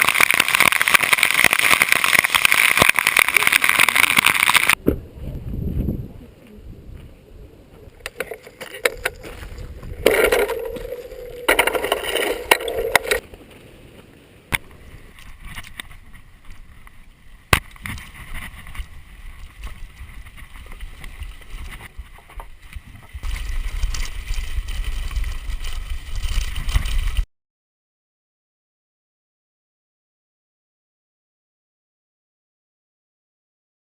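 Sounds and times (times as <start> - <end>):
bicycle rattles and clicks: 0.0 - 4.8, 8.1 - 13.2, 17.7 - 27.2.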